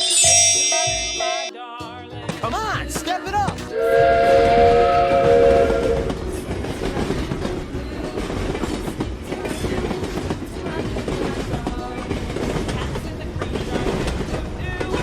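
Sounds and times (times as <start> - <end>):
train rumbling with clattering wheels: 3.0 - 15.0
train whistle: 3.7 - 6.2.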